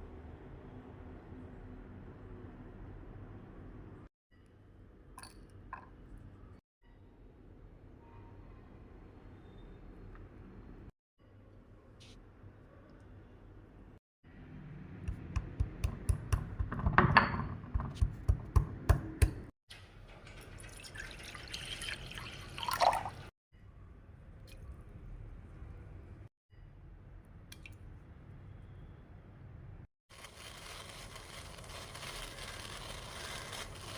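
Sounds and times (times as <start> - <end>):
low kitchen background noise: 0.0 - 18.8, 19.7 - 33.9
sharp kitchen knocks: 15.1 - 19.5
water pouring into a vessel: 20.1 - 23.3.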